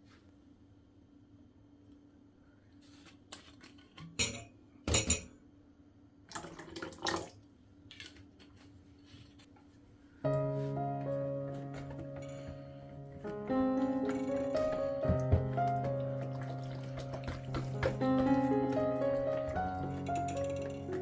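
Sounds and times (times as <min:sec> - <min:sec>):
dishes and utensils clattering: 0:03.6 - 0:05.4, 0:13.8 - 0:21.0
soft instrumental music: 0:10.2 - 0:21.0.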